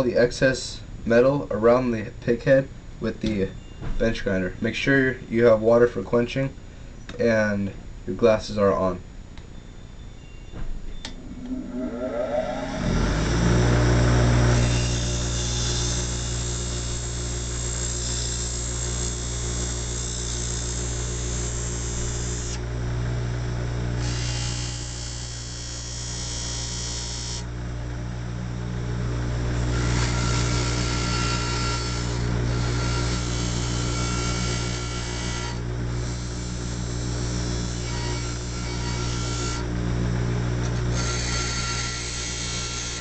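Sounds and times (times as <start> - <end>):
bench grinder motor hum: 12.2 - 22.6, 24.0 - 27.5, 29.5 - 39.8, 40.6 - 43.0.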